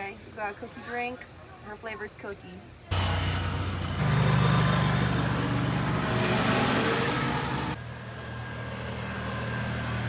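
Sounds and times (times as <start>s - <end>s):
road and wind noise: 2.9s - 10.0s
vehicle engine humming: 2.9s - 10.0s.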